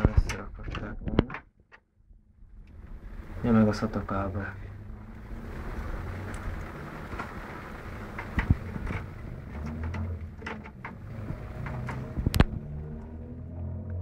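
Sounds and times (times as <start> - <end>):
computer parts clicking and knocking: 0.0 - 1.9
low steady hum: 0.0 - 14.0.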